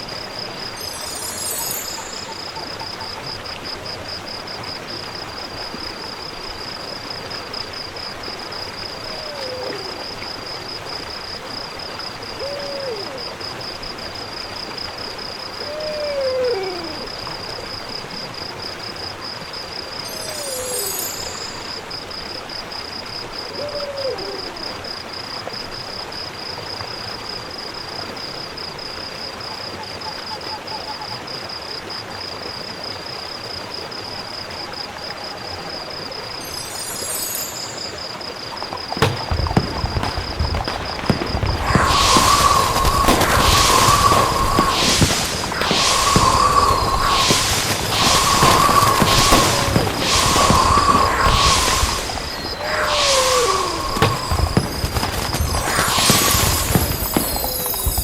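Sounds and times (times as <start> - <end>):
high insect trill: 0.0 - 26.4, 36.0 - 58.0
owl hooting: 12.4 - 13.2, 23.6 - 24.7, 39.0 - 57.9
soft hiss: 38.9 - 58.0
high rustle: 39.0 - 58.0.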